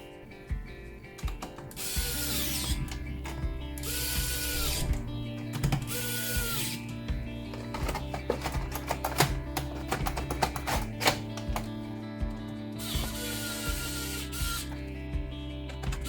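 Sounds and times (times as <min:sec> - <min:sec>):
electric screwdriver motor whine: 0:01.8 - 0:03.0, 0:03.8 - 0:05.2, 0:05.9 - 0:06.8, 0:12.8 - 0:14.8.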